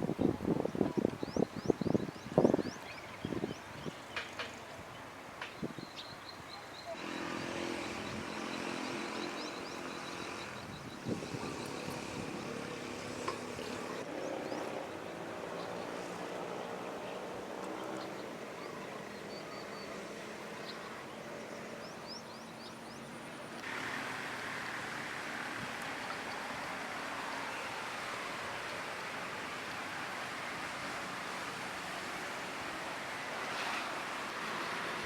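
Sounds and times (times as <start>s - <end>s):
birds chirping: 0.1s - 23.4s.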